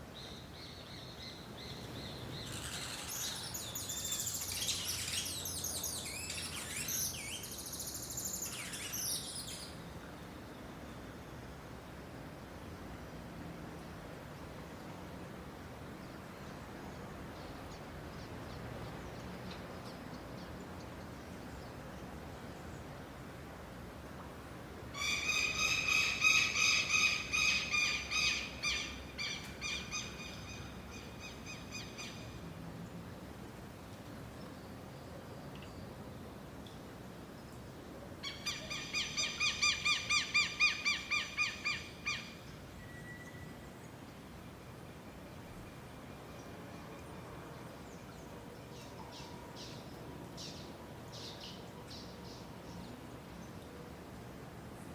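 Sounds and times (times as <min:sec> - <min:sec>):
steady background noise: 0:00.0 - 0:54.9.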